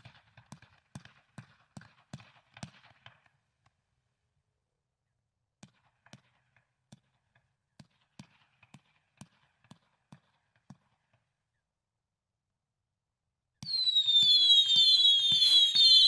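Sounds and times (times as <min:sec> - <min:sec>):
firework cake pops: 0:13.7 - 0:16.0
light crackle: 0:14.6 - 0:16.0.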